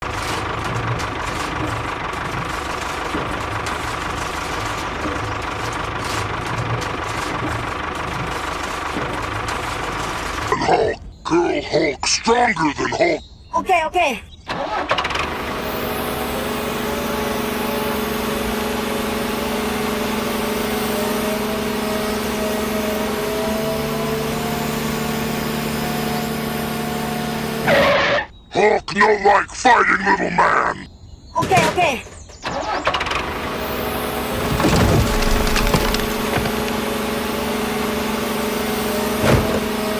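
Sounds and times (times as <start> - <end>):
small engine idling: 0.0 - 10.5, 14.5 - 27.7, 32.2 - 39.9.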